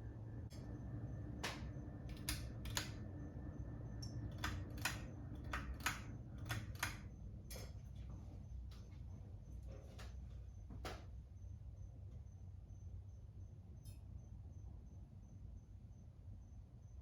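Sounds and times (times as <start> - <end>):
ceiling fan humming: 0.0 - 17.0
sharp clicks: 1.4 - 3.1, 4.0 - 7.1.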